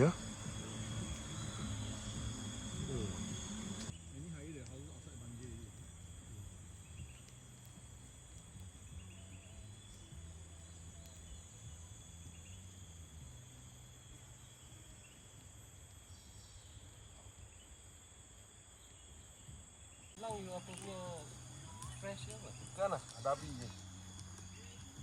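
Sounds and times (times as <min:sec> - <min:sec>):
low hum: 0:00.0 - 0:15.2
insects chirping: 0:00.0 - 0:25.0.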